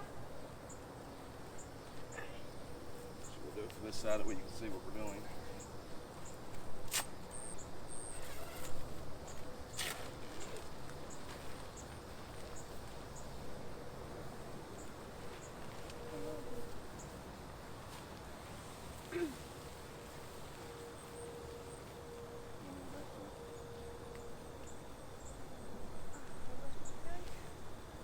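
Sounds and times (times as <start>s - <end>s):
faint insect chirps: 0.0s - 28.0s.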